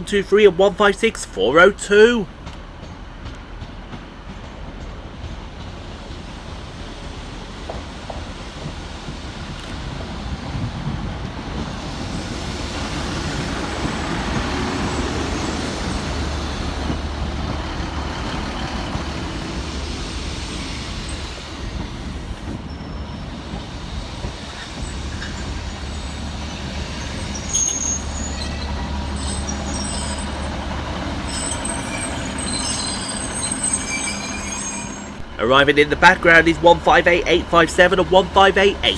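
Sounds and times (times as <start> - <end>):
diesel train engines humming: 0.0 - 7.5, 8.7 - 38.9
train wheels and brakes on rails: 0.0 - 38.9
high brake squeals: 12.2 - 37.0.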